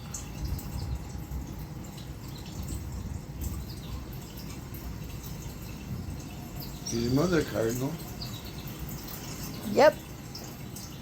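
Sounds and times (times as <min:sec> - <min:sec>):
faint bird chirps from tv: 0:00.0 - 0:11.0.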